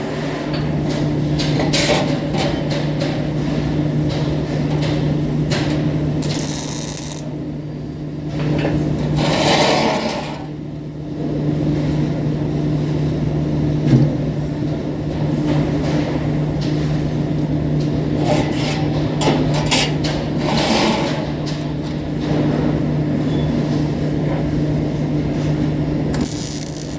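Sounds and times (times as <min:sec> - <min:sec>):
welding machine humming: 0:06.0 - 0:07.4, 0:26.1 - 0:26.9
welding arc crackling: 0:06.2 - 0:07.3, 0:26.2 - 0:26.9.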